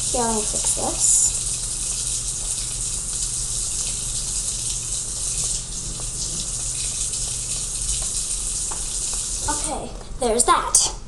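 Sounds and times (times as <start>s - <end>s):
bread sizzling in a pan: 0.0s - 9.6s.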